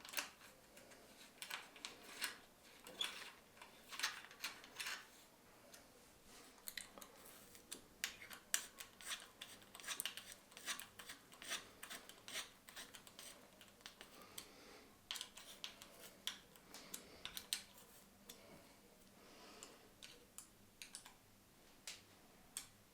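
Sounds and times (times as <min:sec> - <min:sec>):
clicks and scrapes of hand work: 0:06.6 - 0:14.5.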